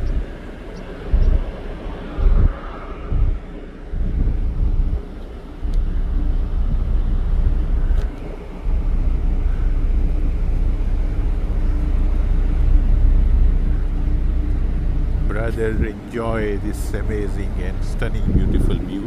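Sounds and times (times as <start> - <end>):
faint steady hum: 0.0 - 19.0
wind buffeting microphone: 0.0 - 19.0.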